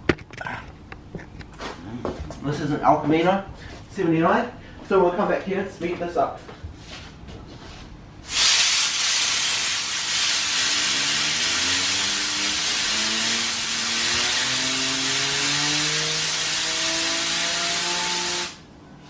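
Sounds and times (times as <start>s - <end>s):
compressed air hissing: 8.2s - 18.6s
fidget spinner whine rising: 10.2s - 18.6s.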